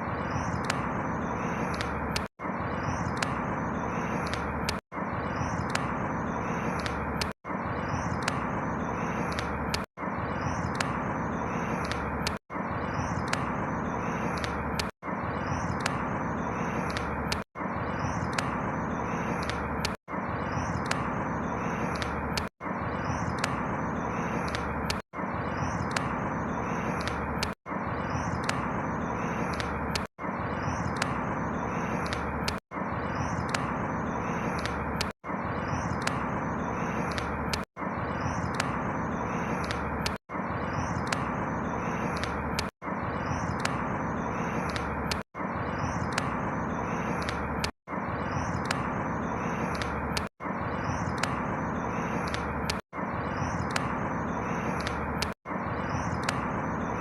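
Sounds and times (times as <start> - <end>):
outdoor background noise: 0.0 - 57.0.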